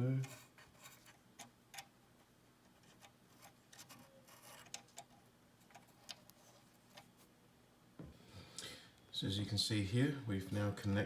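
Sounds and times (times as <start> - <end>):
cable clicking and rubbing: 0.2 - 1.9, 2.7 - 7.3.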